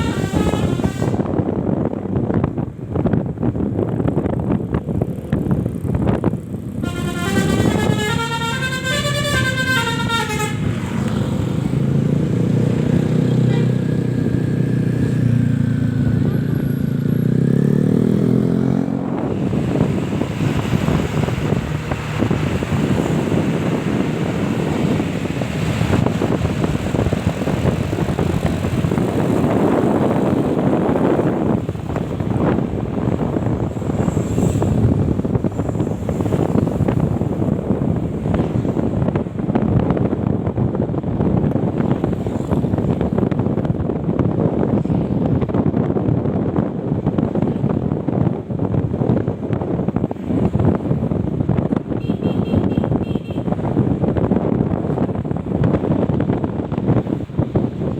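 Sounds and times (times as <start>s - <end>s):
bus horn playing melody: 0.0s - 1.4s, 6.8s - 11.0s, 13.4s - 13.8s, 52.0s - 53.5s
bus engine: 0.0s - 57.9s
road noise: 0.0s - 57.9s.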